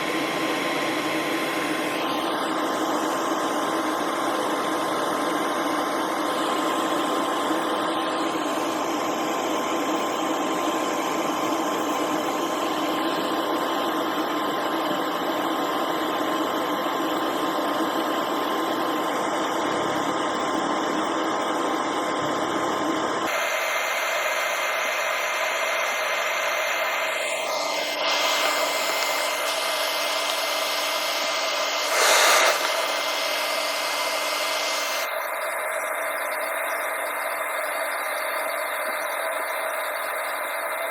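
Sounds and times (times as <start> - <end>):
machine whir with high whine: 0.0 - 40.9
short loud hiss: 31.8 - 32.9.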